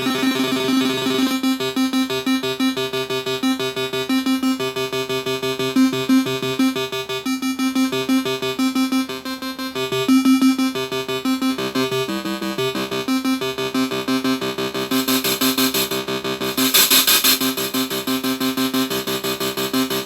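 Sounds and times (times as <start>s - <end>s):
synth notes in fast run: 14.9s - 18.0s.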